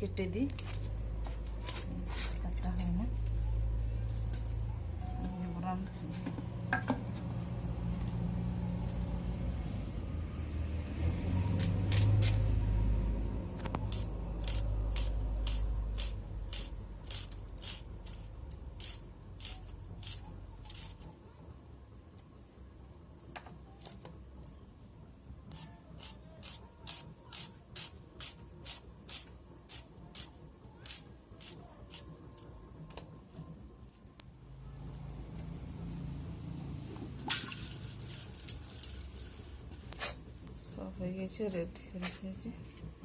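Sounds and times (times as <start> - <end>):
knife slicing onion: 13.8 - 21.1, 25.5 - 32.2.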